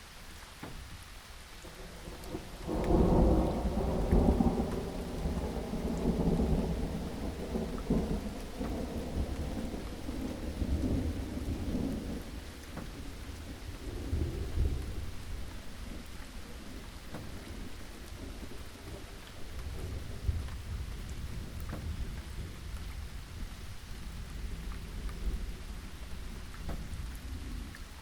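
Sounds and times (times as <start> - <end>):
steady rain falling: 0.0 - 28.0
rolling thunder: 1.6 - 28.0.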